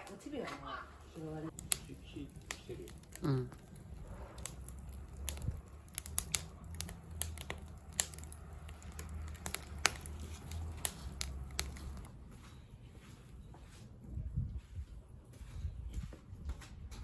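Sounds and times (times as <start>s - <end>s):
wood fire crackling: 0.0s - 14.2s.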